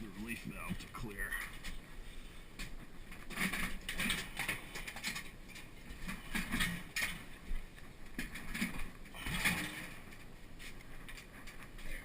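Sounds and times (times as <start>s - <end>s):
metal water heater knocking and scraping: 5.9s - 7.3s, 8.2s - 10.0s.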